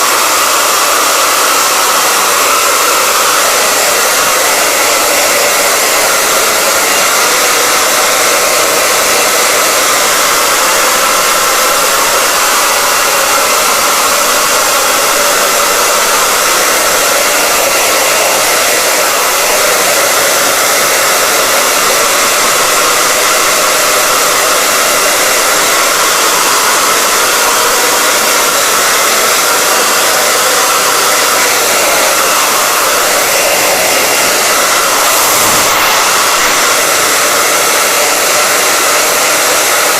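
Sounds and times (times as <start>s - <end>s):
hair dryer blowing: 0.0s - 39.9s.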